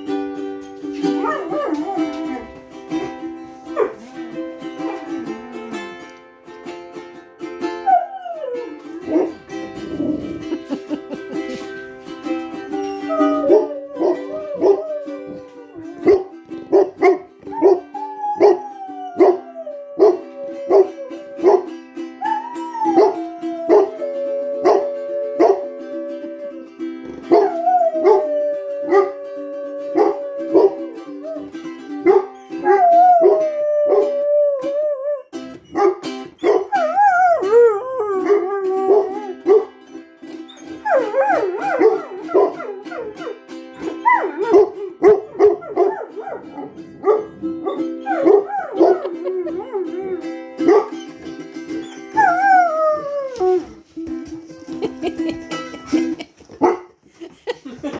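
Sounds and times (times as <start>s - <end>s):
instrumental music with steady rhythm: 0.0s - 57.0s
dog howling: 1.2s - 3.2s, 7.8s - 10.7s, 12.6s - 39.7s, 40.6s - 53.8s.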